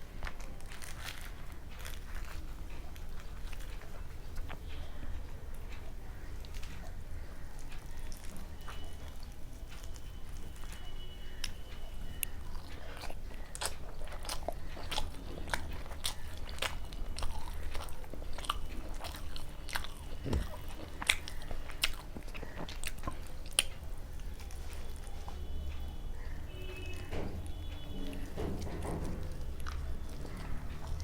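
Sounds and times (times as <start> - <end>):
person biting and chewing food: 6.4 - 25.5.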